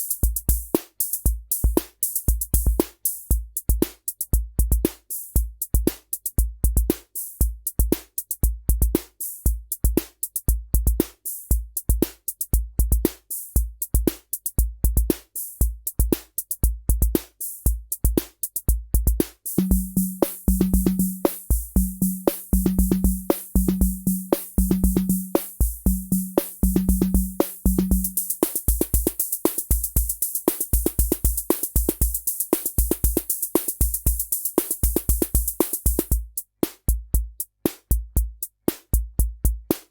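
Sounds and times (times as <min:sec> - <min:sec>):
drum machine bass-drum thumps: 0:00.0 - 0:39.9
drum machine clicks: 0:19.0 - 0:39.9
pitched drum tone: 0:19.6 - 0:36.2.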